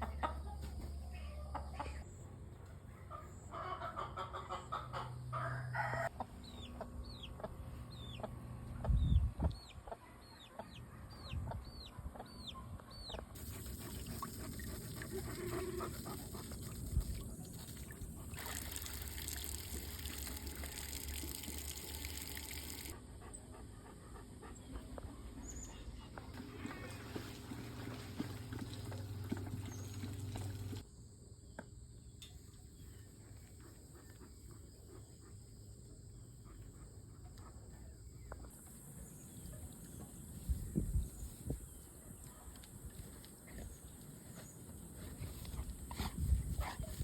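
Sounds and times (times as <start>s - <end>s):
chickens clucking: 0.0s - 2.0s, 3.1s - 10.8s
rooster crowing: 5.3s - 6.1s.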